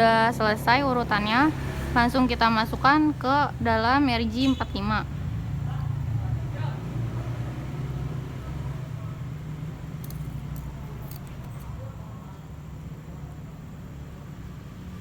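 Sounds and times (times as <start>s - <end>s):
low background hum: 0.0s - 7.4s, 8.3s - 15.0s
faint clicks of wire handling: 10.0s - 11.8s.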